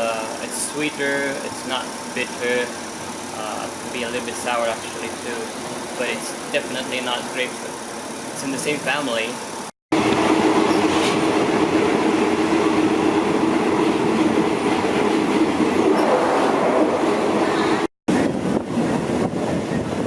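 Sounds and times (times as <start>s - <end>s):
diesel train rumbling on tracks: 0.0s - 20.0s.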